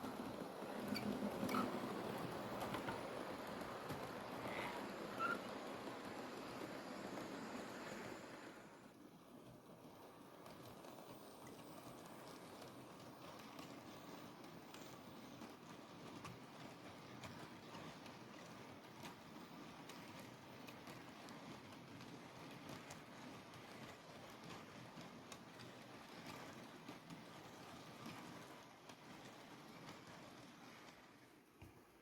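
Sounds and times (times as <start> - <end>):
wheels clicking over rails: 0.0 - 8.5.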